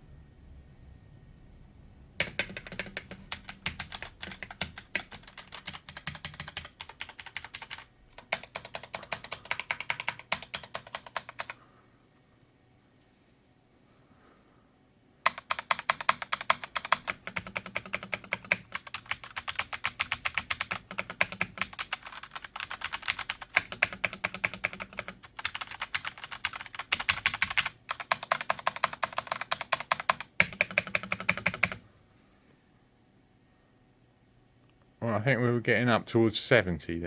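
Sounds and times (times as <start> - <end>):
mechanical keyboard typing clatter: 2.2 - 11.6, 15.2 - 31.8.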